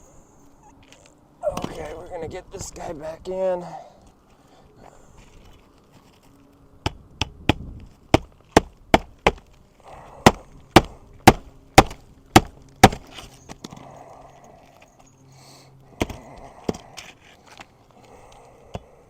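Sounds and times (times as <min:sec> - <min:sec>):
hammer striking nails: 0:06.8 - 0:09.4, 0:10.2 - 0:13.0.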